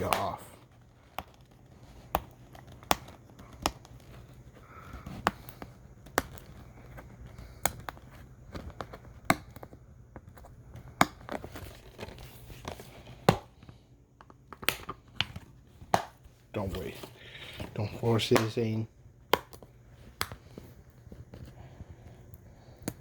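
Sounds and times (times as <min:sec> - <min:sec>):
plastic case clicking: 0:14.2 - 0:16.8.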